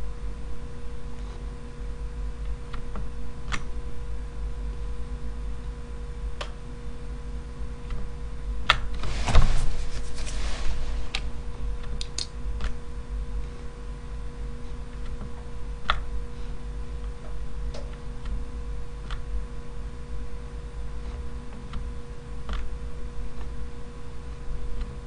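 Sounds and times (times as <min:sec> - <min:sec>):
steady electrical hum: 0:00.0 - 0:25.0
rustling: 0:09.0 - 0:11.6.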